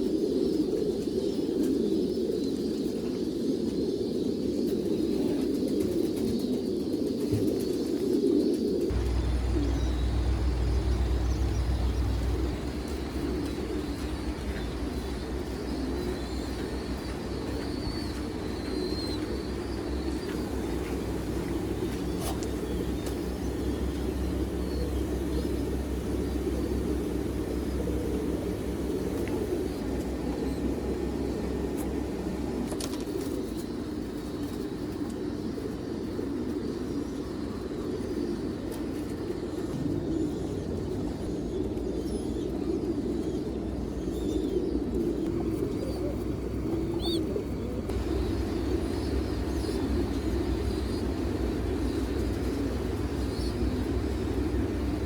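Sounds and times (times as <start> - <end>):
pigeons cooing: 0.0 - 55.0
faint bird chirps: 8.9 - 32.6, 39.8 - 55.0
steady low hum: 8.9 - 34.6, 39.2 - 55.0.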